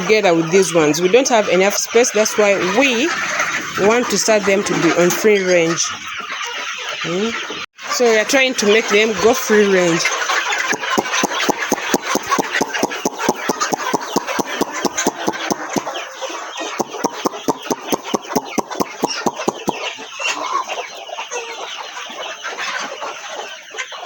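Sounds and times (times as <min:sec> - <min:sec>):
hens clucking: 0:00.0 - 0:24.0
fast sharp taps: 0:10.7 - 0:15.9, 0:16.8 - 0:19.8.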